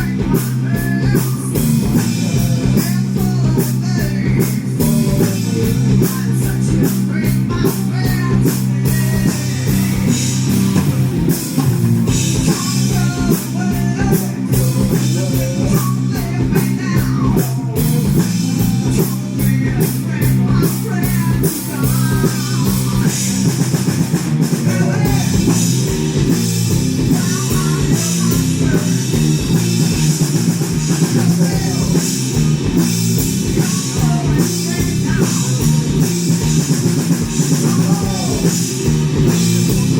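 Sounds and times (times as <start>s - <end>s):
drum kit: 0.0s - 39.9s
guitar: 0.0s - 39.9s
live rock band playing: 0.0s - 39.9s.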